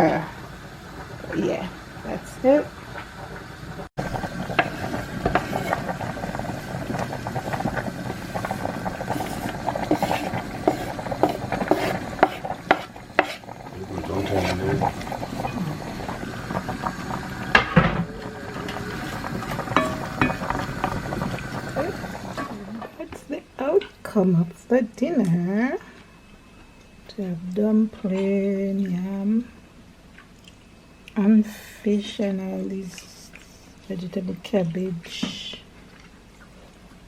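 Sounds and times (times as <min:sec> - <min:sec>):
metal utensils scraping in a pot: 0:08.4 - 0:13.5, 0:18.2 - 0:21.0.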